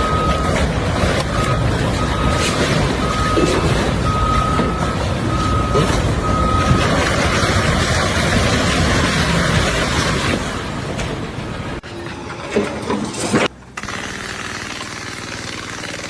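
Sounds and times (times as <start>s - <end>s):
reversing alarm beeping: 0.0s - 7.0s
heavy vehicle engine running: 0.0s - 16.0s.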